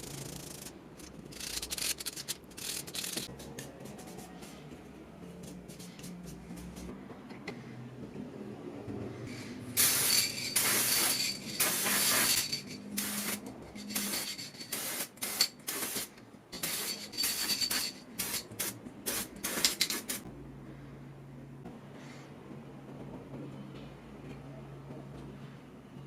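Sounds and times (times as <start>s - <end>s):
spray nozzle hissing: 9.8s - 20.2s.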